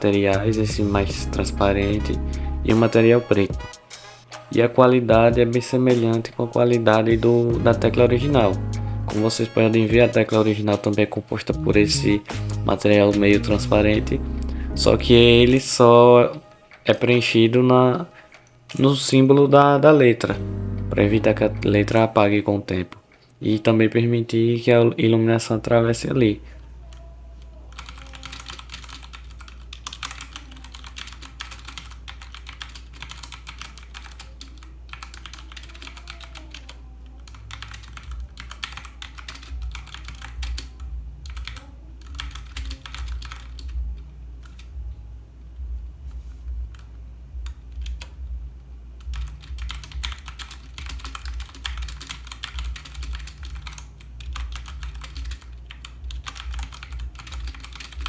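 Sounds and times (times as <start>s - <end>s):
steady low hum: 6.5s - 10.3s, 20.3s - 22.2s
mechanical keyboard typing: 27.7s - 43.8s, 49.0s - 58.0s.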